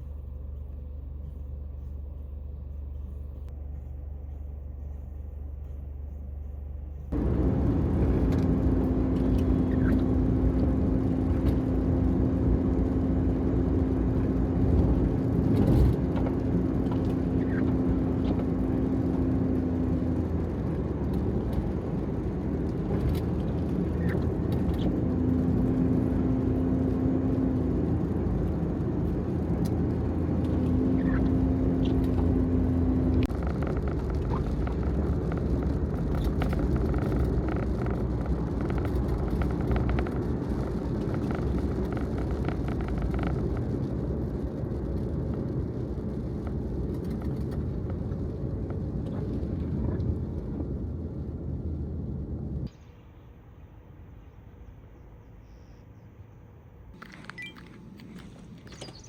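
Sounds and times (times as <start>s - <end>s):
van road and engine noise: 0.0s - 59.0s
faint short chirps: 57.1s - 57.7s.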